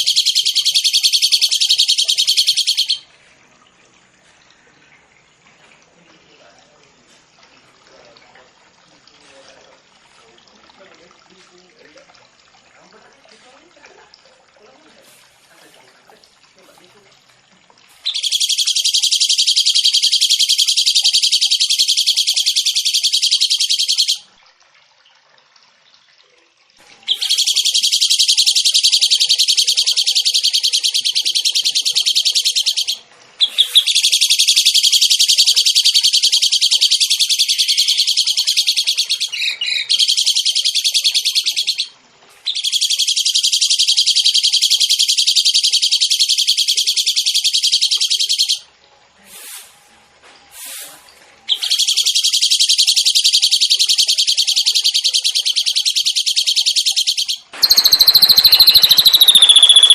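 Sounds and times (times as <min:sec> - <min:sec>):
songbird trilling: 0:00.0 - 0:03.1, 0:18.0 - 0:24.2, 0:27.1 - 0:41.9, 0:42.5 - 0:48.6, 0:51.5 - 0:59.9.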